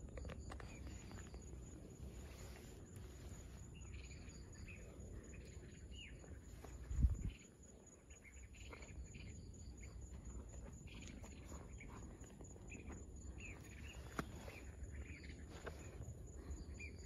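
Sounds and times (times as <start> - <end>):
insects: 0.0 - 17.0
small birds chirping: 0.0 - 17.0.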